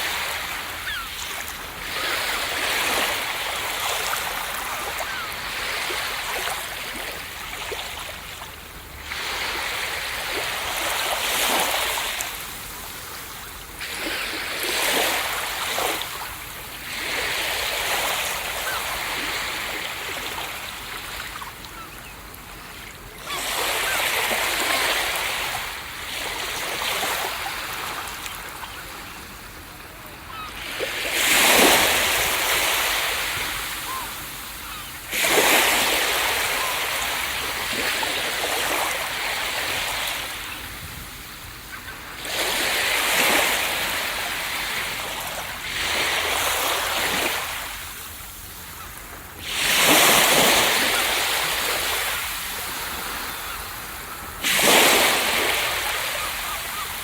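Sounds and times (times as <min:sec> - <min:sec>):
ocean waves crashing on beach: 0:00.0 - 0:57.0.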